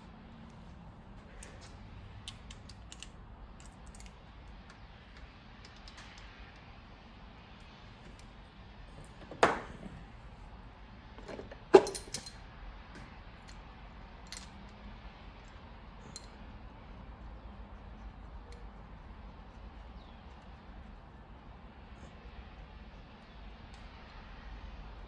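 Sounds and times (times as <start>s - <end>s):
metal tools clinking: 11.2s - 12.4s.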